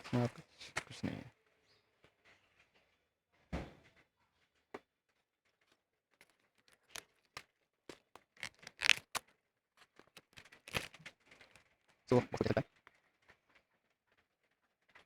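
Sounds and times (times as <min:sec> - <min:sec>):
box packaging clicks and rustles: 0:05.5 - 0:15.0
rasping rustle: 0:06.6 - 0:09.2, 0:09.8 - 0:11.6.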